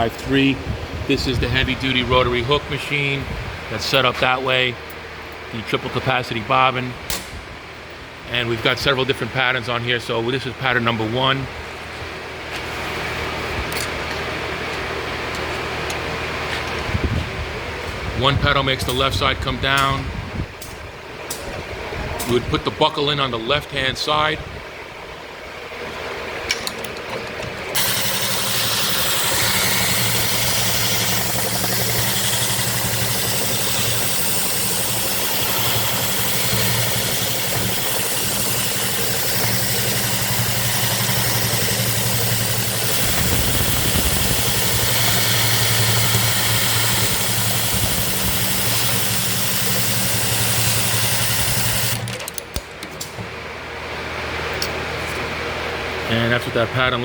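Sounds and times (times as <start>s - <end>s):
machine clicks: 26.5s - 53.2s
sewing machine humming: 27.6s - 52.4s.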